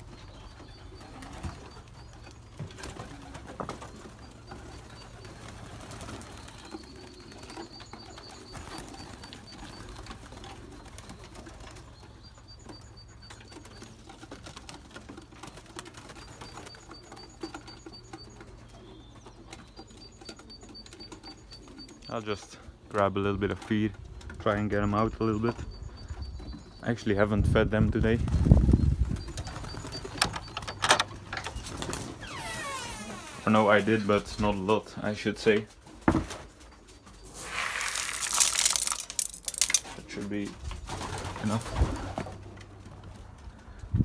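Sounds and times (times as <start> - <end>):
pigeons cooing: 0.0 - 22.9, 28.2 - 32.2, 40.8 - 43.8.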